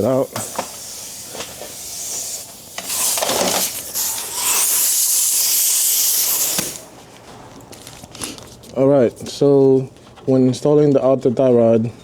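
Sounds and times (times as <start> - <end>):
loud hissing air jet: 0.0 - 6.9.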